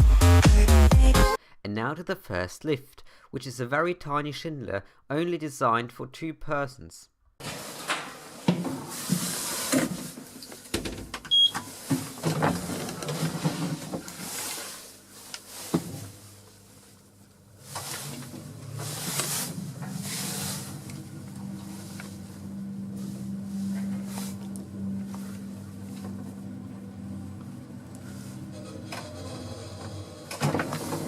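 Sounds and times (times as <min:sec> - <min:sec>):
lift motor hum: 0:07.5 - 0:31.0.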